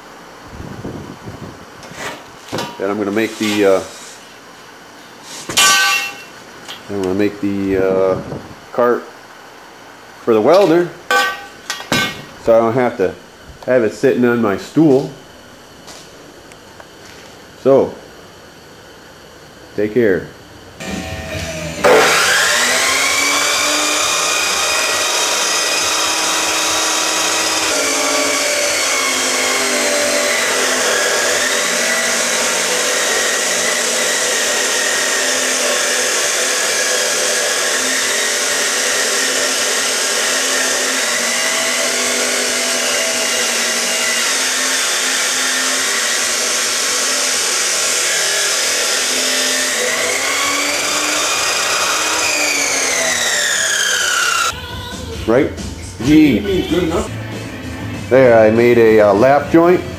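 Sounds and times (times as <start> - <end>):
power tool motor whining: 20.8 - 54.5.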